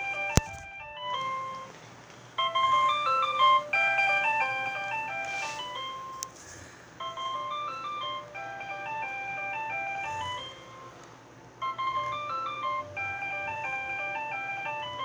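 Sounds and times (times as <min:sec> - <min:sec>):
sharp click: 0:00.4 - 0:00.7
electronic bell chime melody: 0:07.0 - 0:11.0, 0:11.6 - 0:15.0.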